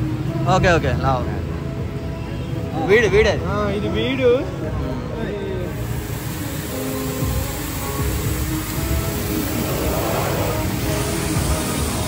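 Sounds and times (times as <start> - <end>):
background music sustained notes: 0.0 - 12.0.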